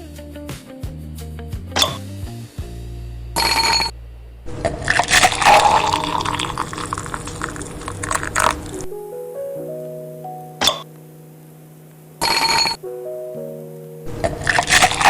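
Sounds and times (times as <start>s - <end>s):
background music: 0.0s - 3.9s, 4.8s - 15.0s
rushing water flush: 4.5s - 8.9s, 14.1s - 15.0s.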